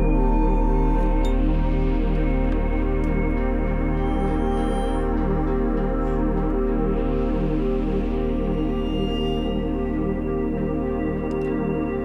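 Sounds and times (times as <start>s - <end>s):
ambient drone of sustained tones: 0.0s - 12.0s
low pulsing notes: 0.0s - 12.0s.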